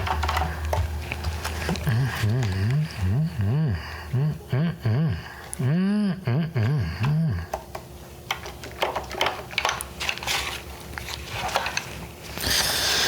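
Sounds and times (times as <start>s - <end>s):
man humming: 1.6s - 7.6s
packaging rustling: 9.5s - 12.4s.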